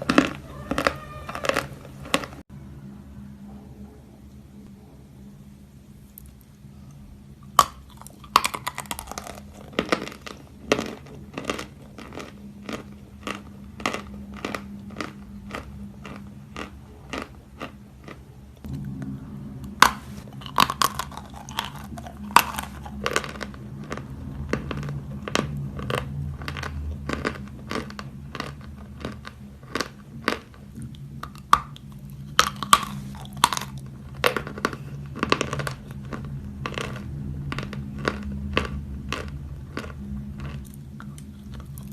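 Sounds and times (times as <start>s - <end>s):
chewing crunchy chalk: 0.0s - 2.4s, 7.4s - 18.7s, 19.8s - 41.9s
faint steady hum: 0.0s - 41.9s.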